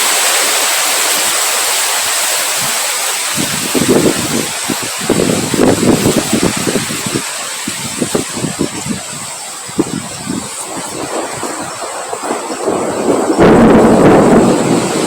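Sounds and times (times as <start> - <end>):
steady high hiss: 0.0 - 15.0
wind gusts: 0.0 - 15.0
wind buffeting microphone: 2.2 - 15.0.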